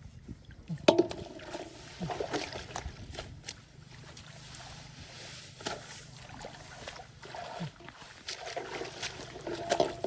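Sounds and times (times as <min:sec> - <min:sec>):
hands splashing in muddy water: 0:00.7 - 0:10.0.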